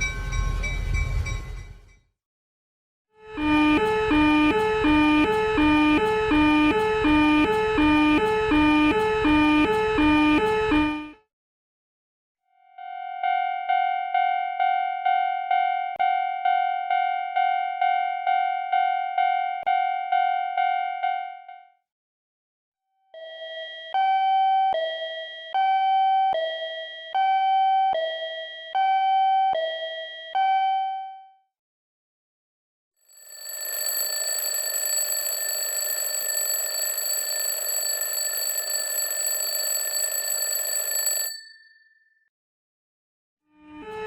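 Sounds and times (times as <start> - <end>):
continuous ringing alarm: 3.4 - 11.1, 33.2 - 42.0
two-tone crossing signal: 3.4 - 11.2.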